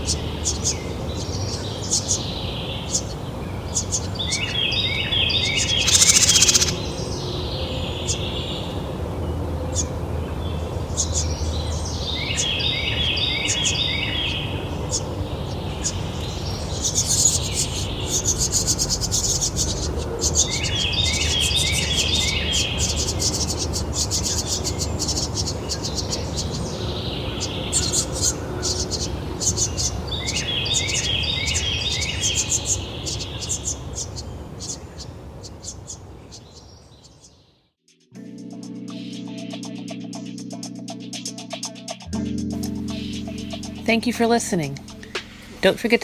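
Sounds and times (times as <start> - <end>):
small high bird chirps: 0.0 - 8.7, 10.9 - 37.5
bird repeating quick phrase: 5.8 - 6.8.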